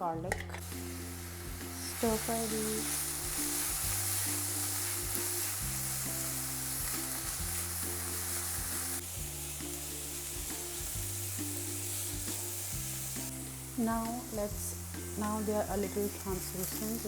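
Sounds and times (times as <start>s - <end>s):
soft background music: 0.0s - 17.0s
onion and garlic sizzling in oil: 0.3s - 17.0s.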